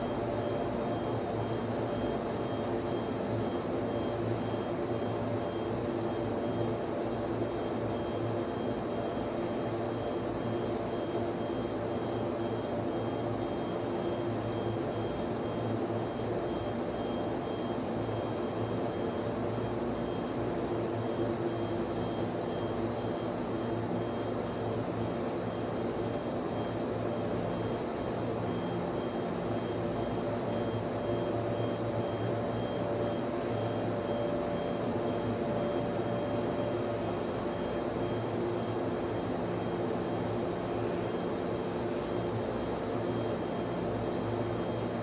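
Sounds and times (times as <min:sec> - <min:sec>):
cooling fans droning: 0:00.0 - 0:45.0
constant hums: 0:18.4 - 0:45.0.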